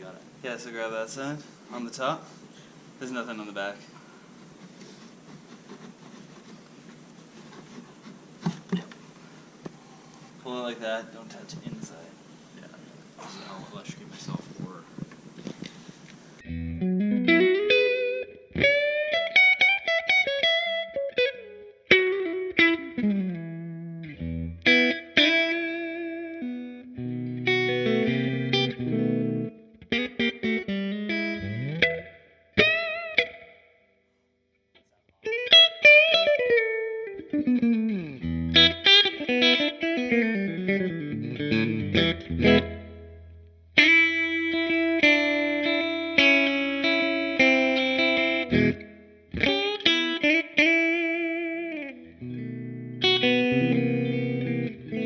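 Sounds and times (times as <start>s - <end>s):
overdriven electric guitar licks: 15.0s - 33.6s, 35.2s - 55.0s.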